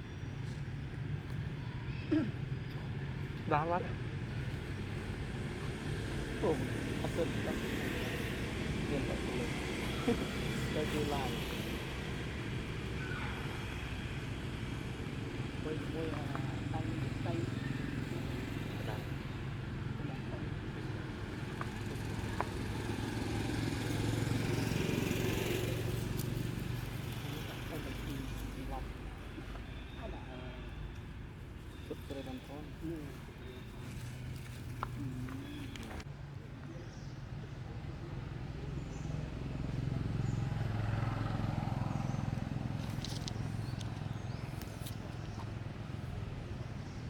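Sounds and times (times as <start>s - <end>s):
motor engine running: 4.6s - 30.7s, 31.7s - 36.0s.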